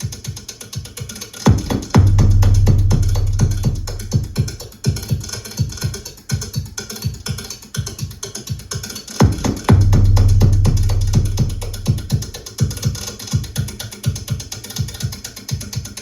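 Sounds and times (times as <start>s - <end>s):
electronic music over loudspeakers: 0.0s - 16.0s
programmed drum hits: 1.5s - 5.1s, 9.2s - 12.5s
deep sustained bass note: 1.7s - 4.6s, 9.7s - 12.4s.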